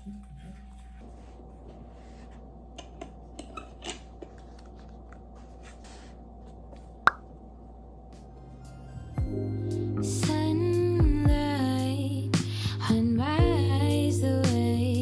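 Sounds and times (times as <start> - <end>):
low room hum: 0.0 - 15.0.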